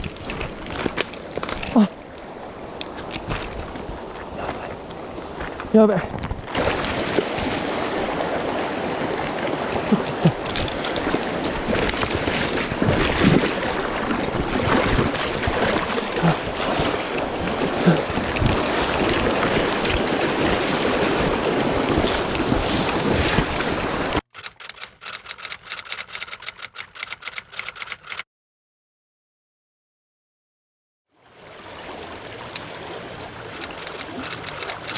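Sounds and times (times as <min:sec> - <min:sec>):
water splashes and knocks: 0:00.0 - 0:01.8, 0:02.8 - 0:04.2, 0:05.3 - 0:24.2
rapid even ticking: 0:24.4 - 0:28.2, 0:33.6 - 0:34.9.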